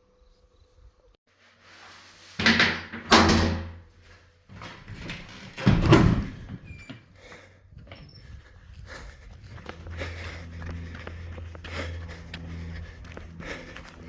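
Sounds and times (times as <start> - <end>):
heavy rough breathing: 7.1 - 14.0.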